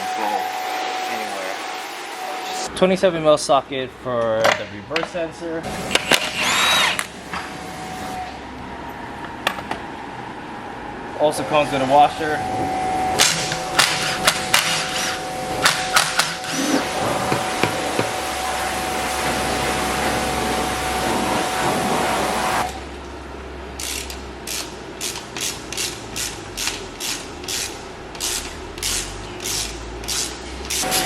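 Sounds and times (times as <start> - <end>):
hand ratchet clicking: 23.8 - 31.0.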